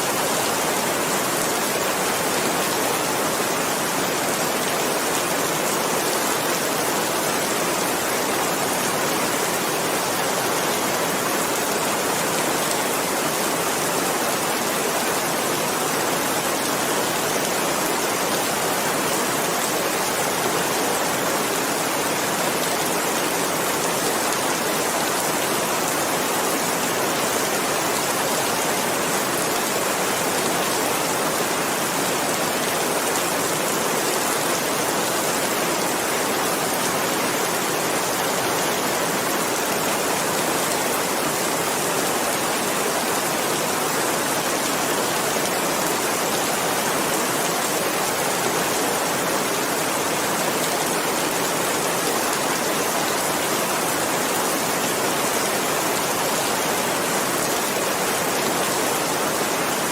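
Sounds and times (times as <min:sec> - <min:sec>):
steady rain: 0:00.0 - 0:59.9.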